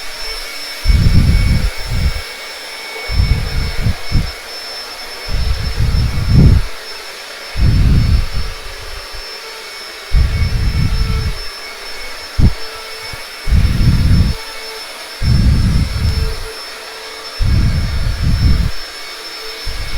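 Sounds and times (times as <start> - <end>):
vacuum cleaner running: 0.0 - 19.9
loud low rumbles: 0.9 - 2.2, 3.1 - 4.3, 5.3 - 6.8, 7.6 - 9.2, 10.1 - 11.4, 12.3 - 14.4, 15.2 - 16.4, 17.4 - 18.8.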